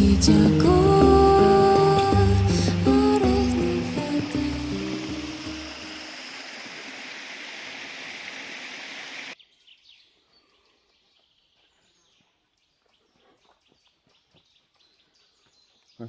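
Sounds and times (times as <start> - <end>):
rushing water noise: 0.0 - 9.4.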